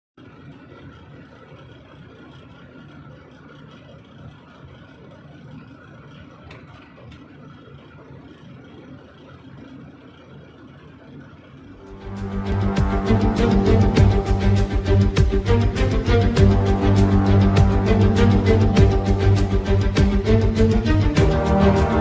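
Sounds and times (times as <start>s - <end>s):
vehicle engine running: 11.8s - 22.0s.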